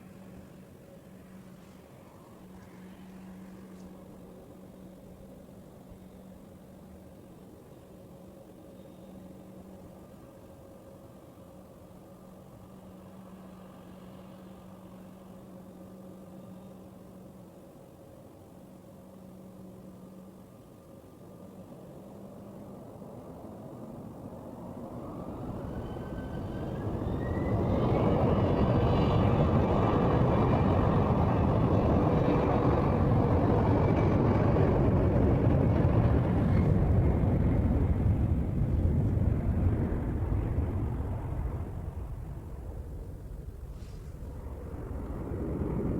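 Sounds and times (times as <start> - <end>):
distant jet engine drone: 0.0 - 45.9.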